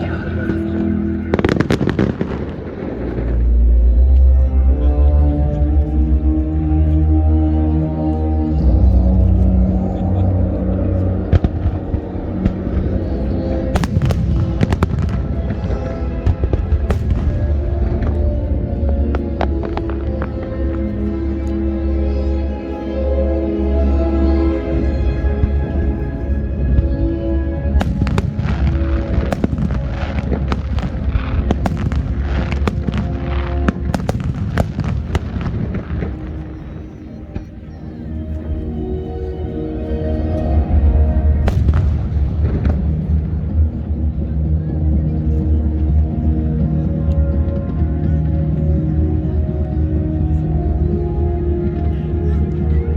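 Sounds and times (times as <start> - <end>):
loud music soundtrack: 0.0 - 36.6, 37.3 - 52.9
fireworks bursting with sharp bangs: 1.2 - 3.6, 13.7 - 18.3, 27.7 - 36.7, 40.8 - 43.3.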